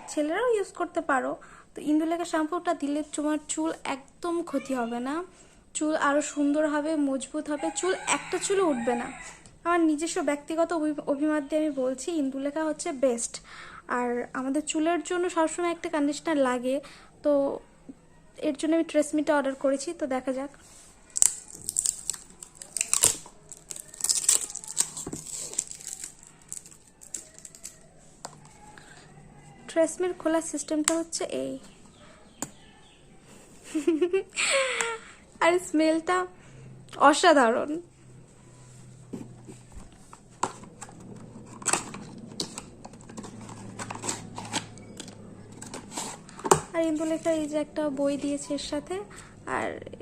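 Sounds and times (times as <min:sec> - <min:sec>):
plastic packaging crinkling and tearing: 0:21.1 - 0:28.6, 0:40.7 - 0:47.5
plastic bottles clicking and tapping: 0:40.4 - 0:46.8.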